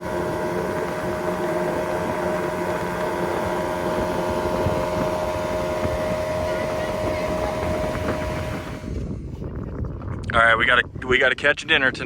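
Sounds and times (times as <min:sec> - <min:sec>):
boat motor droning: 0:00.0 - 0:11.3
rumbling water: 0:00.0 - 0:11.8
wind noise: 0:00.0 - 0:12.0.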